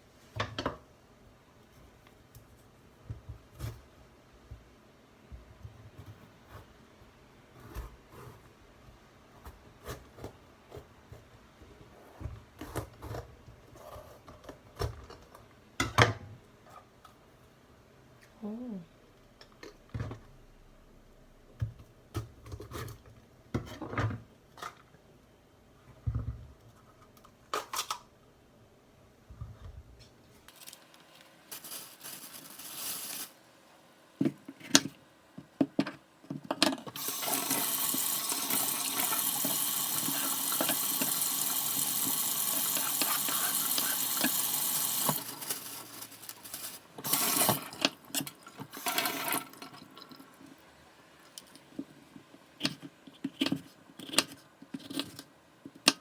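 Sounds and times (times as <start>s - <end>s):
water running: 37.0s - 50.6s.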